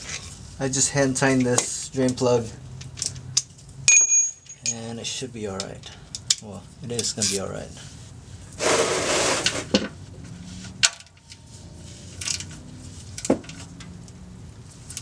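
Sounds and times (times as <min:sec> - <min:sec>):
scraping rustle: 0:07.1 - 0:10.8.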